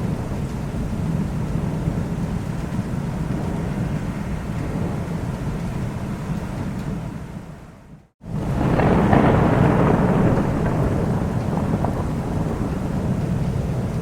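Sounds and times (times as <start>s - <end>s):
thunder rumbling: 0.0s - 7.4s, 8.2s - 14.0s
rain hissing: 8.2s - 14.0s.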